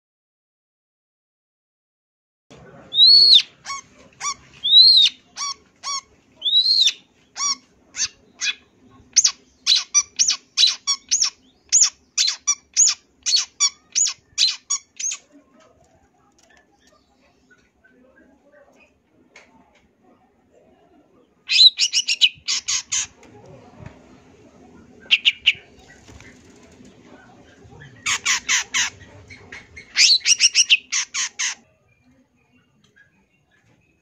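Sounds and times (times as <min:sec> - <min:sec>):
shrike singing: 0:24.9 - 0:31.6.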